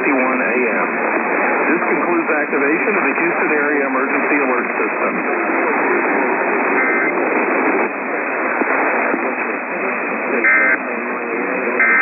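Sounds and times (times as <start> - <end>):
radio hiss: 0.0 - 12.0
warbling digital data tones: 10.4 - 10.8.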